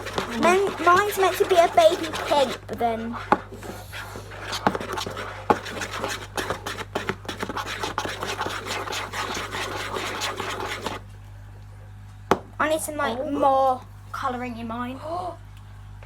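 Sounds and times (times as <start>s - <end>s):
utensil scraping a bowl: 0.0s - 11.1s.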